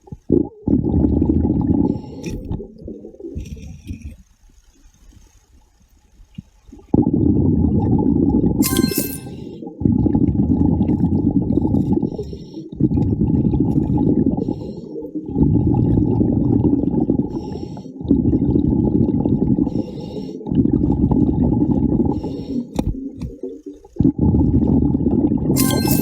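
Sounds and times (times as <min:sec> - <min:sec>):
bubbling exhalation underwater: 0:00.3 - 0:03.5, 0:06.9 - 0:08.6, 0:09.8 - 0:12.2, 0:12.8 - 0:17.3, 0:18.0 - 0:19.8, 0:20.5 - 0:25.6.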